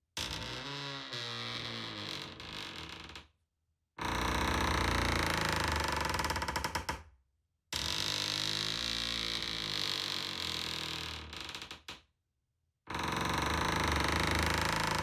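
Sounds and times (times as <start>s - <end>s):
wooden door creaking on hinges: 0.2s - 3.2s, 13.2s - 15.0s.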